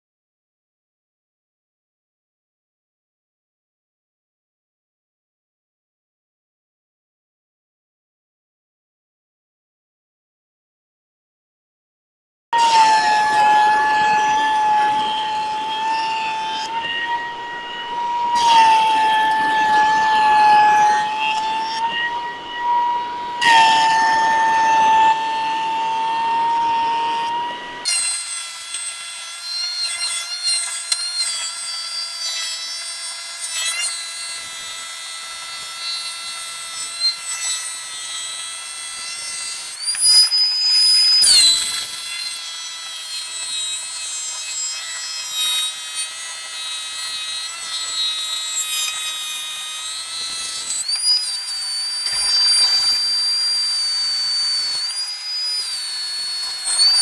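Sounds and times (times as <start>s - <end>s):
power tool whining on wood: 12.6s - 57.0s.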